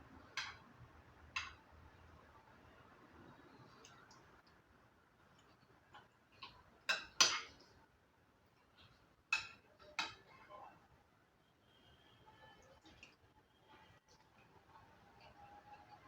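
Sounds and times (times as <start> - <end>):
cutlery clinking against plate: 9.3 - 10.3.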